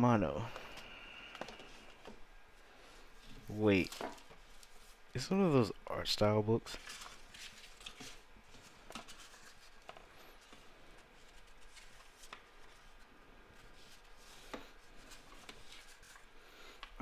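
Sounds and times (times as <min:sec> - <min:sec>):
book pages turning: 0:06.7 - 0:16.9.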